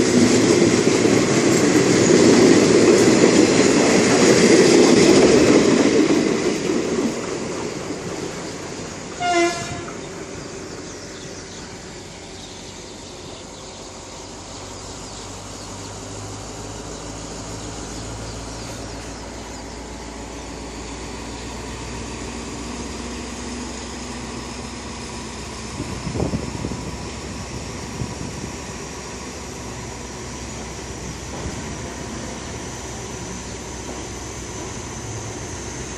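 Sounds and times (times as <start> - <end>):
diesel locomotive engine humming: 0.0 - 35.9
train horn toot: 9.2 - 10.1.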